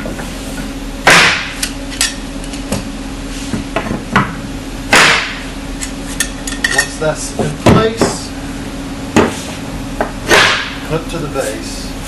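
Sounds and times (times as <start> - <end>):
loud knocks: 1.0 - 1.6, 3.8 - 5.4.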